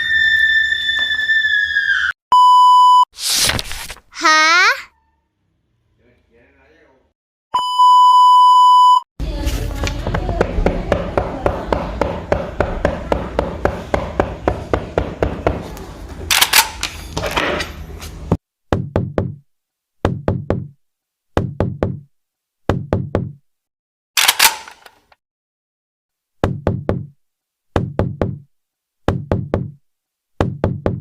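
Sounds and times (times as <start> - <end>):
fast sharp knocks: 10.2 - 15.6.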